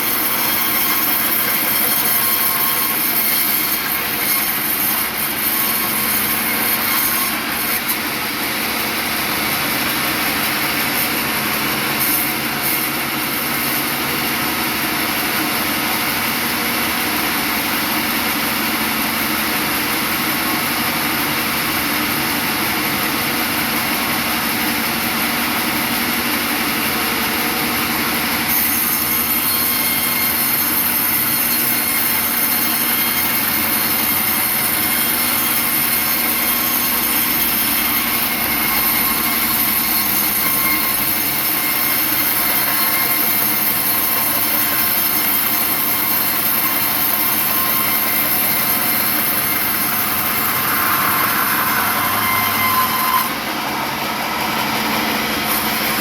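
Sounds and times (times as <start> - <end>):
sawmill saw high hiss: 28.6 - 56.0.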